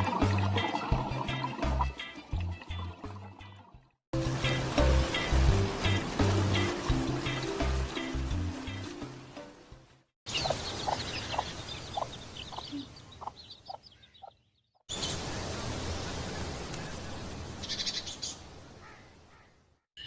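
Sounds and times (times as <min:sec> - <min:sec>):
outdoor background: 0:00.0 - 0:20.0
high bird chirps: 0:10.3 - 0:15.1
bird calls: 0:10.3 - 0:15.3.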